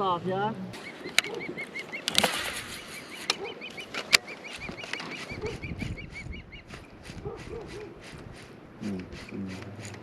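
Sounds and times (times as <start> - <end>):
animal chirping calls: 0.8 - 2.2, 2.8 - 8.1.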